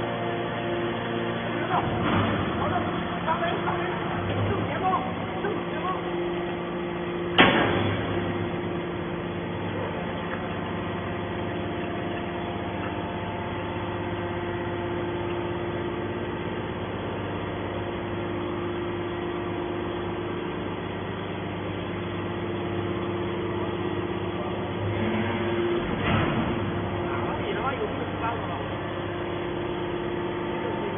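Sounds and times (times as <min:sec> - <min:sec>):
scrap metal baler humming: 0:00.0 - 0:30.9
sharp bang: 0:07.4 - 0:08.2.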